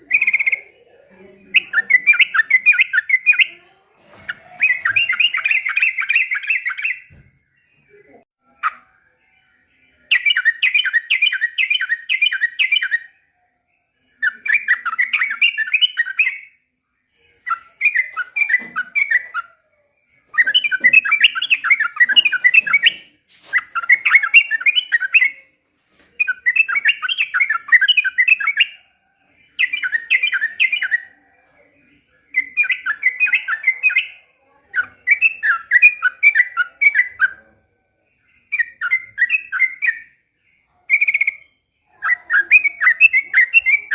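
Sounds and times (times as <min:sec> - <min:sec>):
bulbul singing bubbly phrases: 0:00.0 - 0:07.0.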